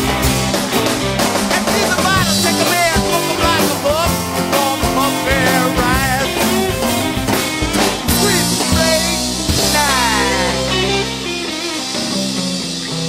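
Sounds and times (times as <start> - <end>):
drums: 0.0 - 13.0
lead instrument bending notes: 1.5 - 7.7.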